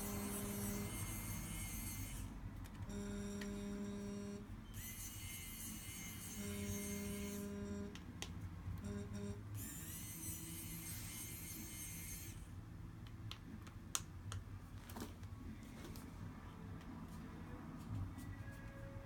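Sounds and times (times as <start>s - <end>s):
faint background music: 14.5s - 19.0s.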